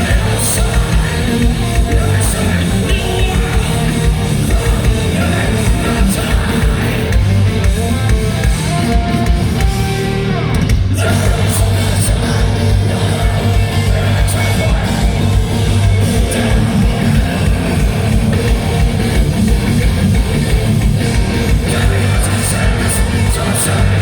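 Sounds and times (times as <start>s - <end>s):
person singing: 0.0s - 7.2s, 10.9s - 18.0s, 21.6s - 24.0s
distorted guitars: 0.0s - 24.0s
heavy rock band playing live: 0.0s - 24.0s.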